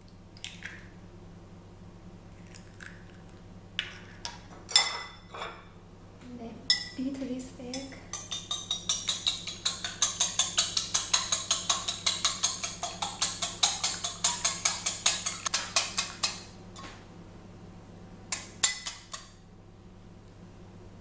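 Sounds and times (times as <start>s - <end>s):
utensil clicking against bowl: 8.2s - 16.5s.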